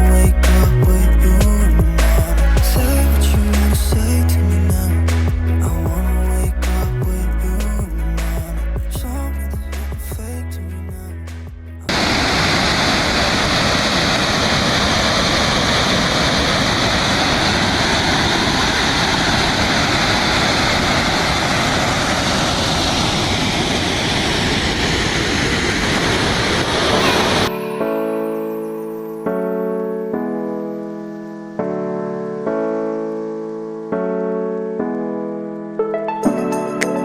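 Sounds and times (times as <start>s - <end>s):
music: 0.0s - 11.9s, 27.0s - 37.0s
piano music: 0.0s - 12.0s, 26.8s - 37.0s
waterfall rushing: 11.9s - 23.9s.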